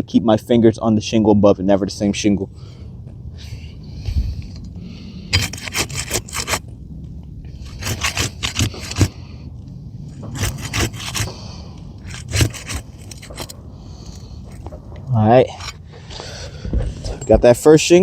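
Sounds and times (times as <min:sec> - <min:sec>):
pry bar scraping under shingle: 0:03.4 - 0:09.3, 0:10.0 - 0:17.7.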